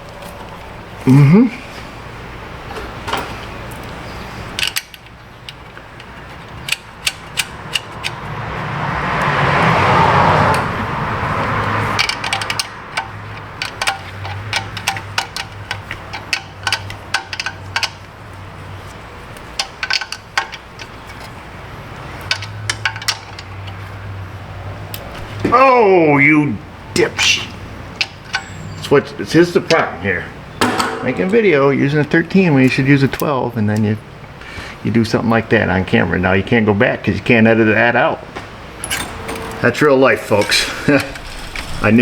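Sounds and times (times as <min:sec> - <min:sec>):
hand tools clinking on metal: 0:11.9 - 0:18.1, 0:19.4 - 0:21.4, 0:22.2 - 0:23.8, 0:28.0 - 0:28.8, 0:29.6 - 0:32.4
rushing noise: 0:40.7 - 0:42.0.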